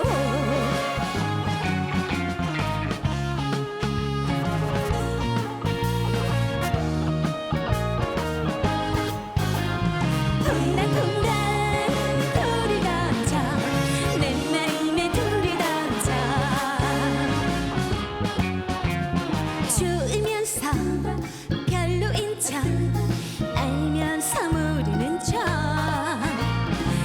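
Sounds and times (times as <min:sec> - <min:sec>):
person singing: 0:00.0 - 0:01.3, 0:10.4 - 0:17.9
band bass beat: 0:00.0 - 0:27.0.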